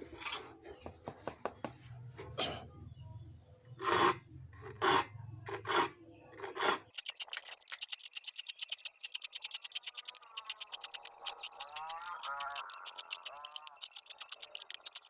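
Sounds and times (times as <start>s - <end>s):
fast rasping clicks: 6.9s - 15.0s.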